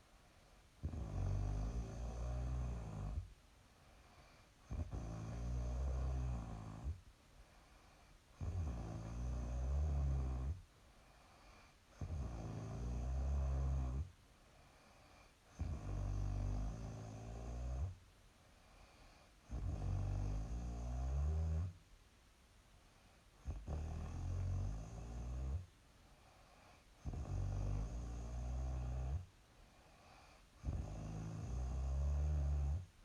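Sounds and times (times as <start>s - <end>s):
quiet breathing: 0.0s - 33.0s
woman snoring: 0.8s - 3.3s, 4.7s - 7.0s, 8.4s - 10.6s, 12.0s - 14.1s, 15.6s - 18.0s, 19.5s - 21.7s, 23.5s - 25.6s, 27.0s - 29.3s, 30.1s - 32.9s.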